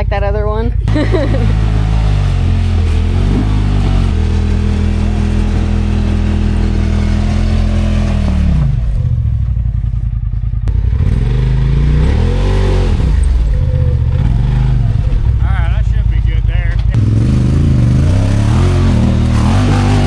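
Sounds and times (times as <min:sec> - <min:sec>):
utility vehicle engine revving: 0:00.8 - 0:20.0.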